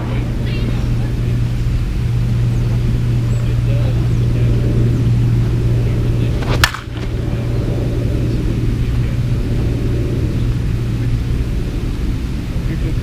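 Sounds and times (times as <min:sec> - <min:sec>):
steady low rumble: 0:00.0 - 0:13.0
bat cracking a softball: 0:06.4 - 0:07.2.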